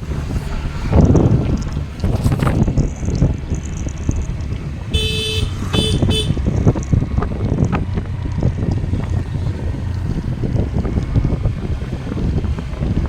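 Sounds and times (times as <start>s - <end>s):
traffic rumble: 0.0s - 13.0s
wind noise on microphone: 0.0s - 13.0s
vehicle horn honking: 4.9s - 6.4s.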